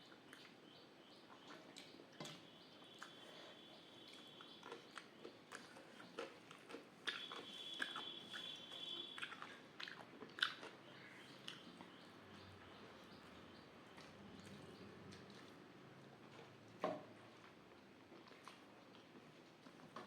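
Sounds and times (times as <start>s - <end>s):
person chewing: 4.1s - 12.0s, 17.2s - 19.8s.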